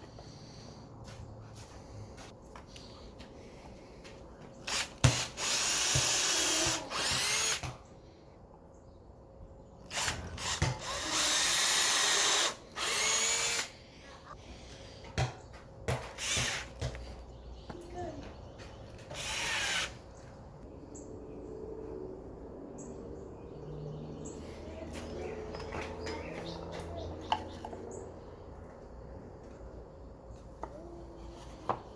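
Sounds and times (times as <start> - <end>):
power drill running: 4.7 - 7.6, 9.9 - 13.7, 16.2 - 16.8, 19.1 - 20.0.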